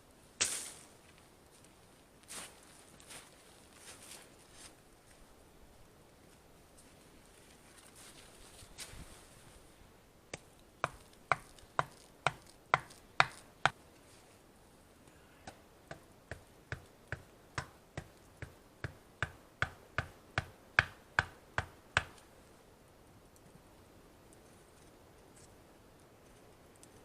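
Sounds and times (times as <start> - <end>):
blade chopping wood: 10.3 - 13.5, 19.2 - 22.2.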